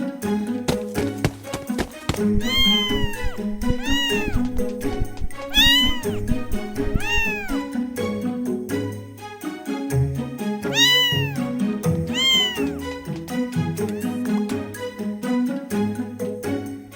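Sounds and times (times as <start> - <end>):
background music with beat: 0.0 - 16.9
cat meowing: 2.3 - 7.7, 10.7 - 12.8.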